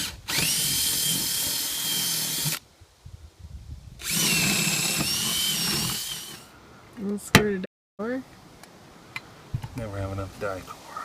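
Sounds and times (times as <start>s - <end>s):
power drill whining: 0.0s - 2.6s, 4.0s - 6.5s.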